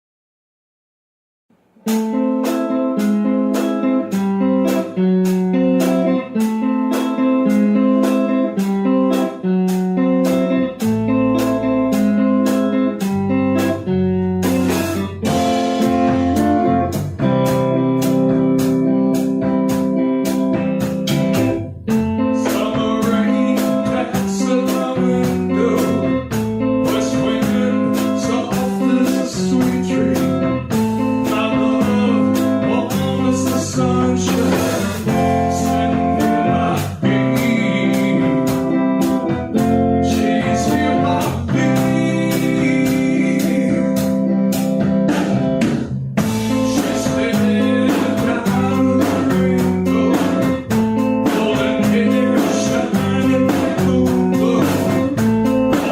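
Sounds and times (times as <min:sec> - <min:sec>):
guitar: 0:01.5 - 0:55.9
band playing blues song: 0:01.8 - 0:55.9.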